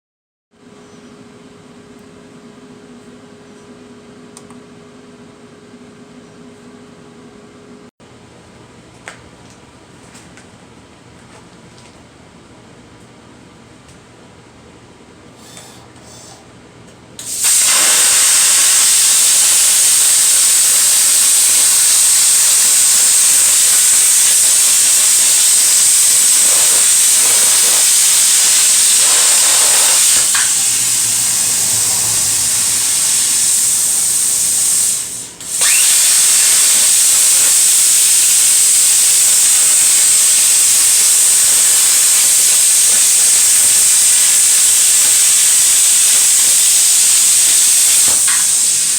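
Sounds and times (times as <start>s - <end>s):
plasma cutter hissing and whining: 17.2s - 48.9s.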